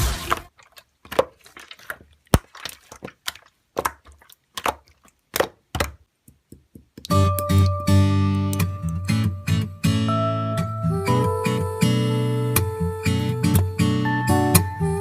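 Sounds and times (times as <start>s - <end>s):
music: 0.0s - 0.5s, 7.1s - 15.0s
sharp taps and clicks: 5.4s - 9.2s.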